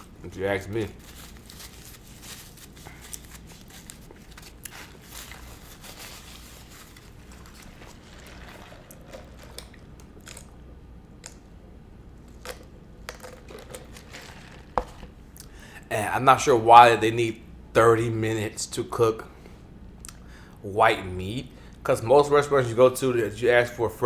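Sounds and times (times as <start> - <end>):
crispy chicken crunching: 0.0 - 10.6, 12.3 - 15.2.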